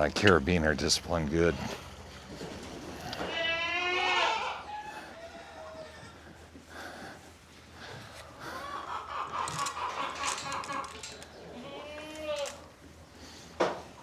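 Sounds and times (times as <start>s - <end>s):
goat bleating: 3.0s - 4.7s, 11.4s - 12.7s.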